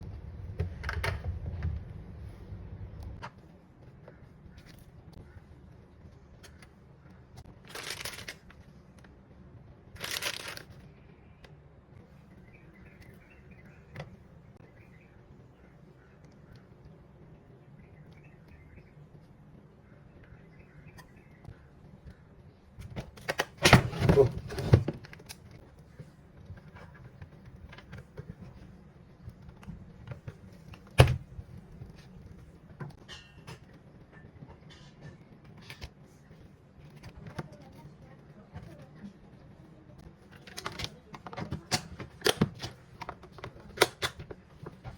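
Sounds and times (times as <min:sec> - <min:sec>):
rustling: 0:07.6 - 0:08.6, 0:10.0 - 0:10.7.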